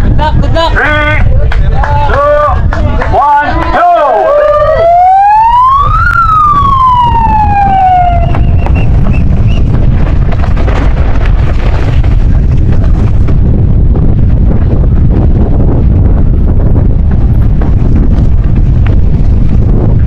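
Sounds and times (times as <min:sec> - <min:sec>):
wind buffeting microphone: 0:00.0 - 0:20.0
siren-like tone: 0:04.3 - 0:09.2.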